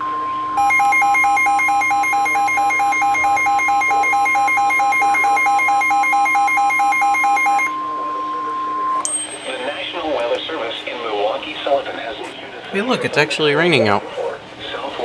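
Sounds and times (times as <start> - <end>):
steady warning alarm tone: 0.0 - 12.6
alternating electronic alert beeps: 0.6 - 8.0.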